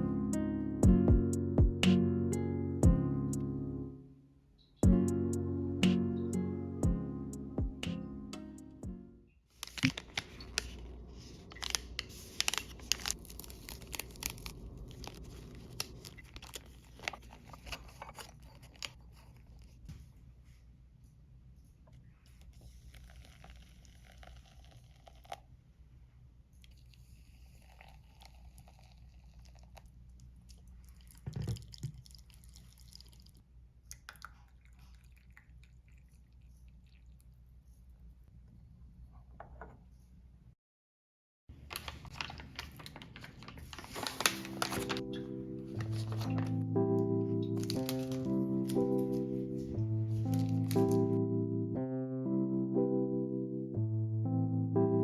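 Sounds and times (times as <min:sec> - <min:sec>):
background music: 0:00.0 - 0:09.3, 0:44.1 - 0:55.0
packaging tearing and crinkling: 0:09.5 - 0:19.6, 0:41.7 - 0:46.6, 0:47.6 - 0:49.2, 0:50.2 - 0:51.0.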